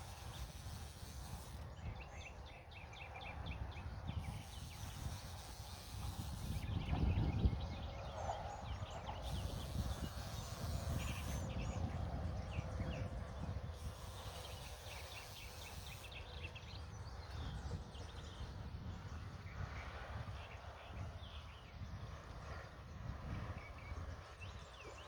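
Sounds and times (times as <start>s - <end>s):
small birds chirping: 0.0s - 18.6s
wind buffeting microphone: 0.0s - 24.7s.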